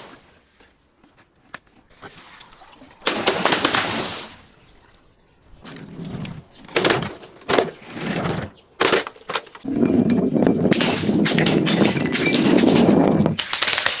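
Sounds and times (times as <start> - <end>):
glass crunching: 8.9 - 14.0
glass bottle cracking: 10.7 - 14.0.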